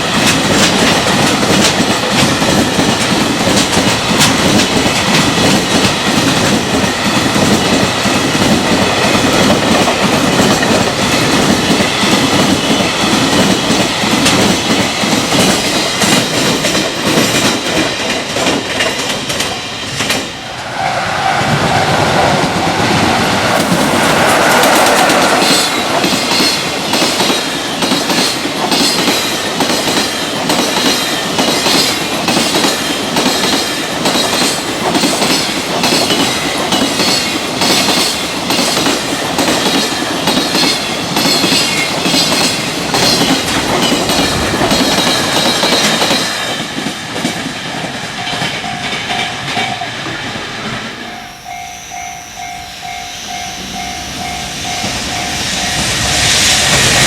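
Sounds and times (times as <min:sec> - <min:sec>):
train wheels clattering over rail joints: 0:00.1 - 0:20.3, 0:22.7 - 0:50.8
level crossing warning bell: 0:48.2 - 0:50.1, 0:50.9 - 0:56.3.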